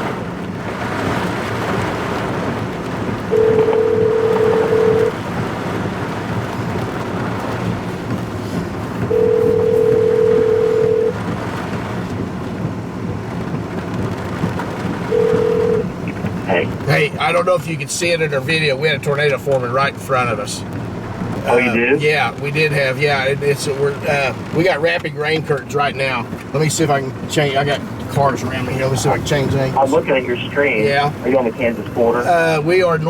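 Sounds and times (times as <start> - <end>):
wind-driven rain hiss: 0.0 - 9.6, 11.2 - 19.0, 19.7 - 33.0
phone ringing tone: 3.3 - 5.1, 9.1 - 11.2, 15.1 - 15.9.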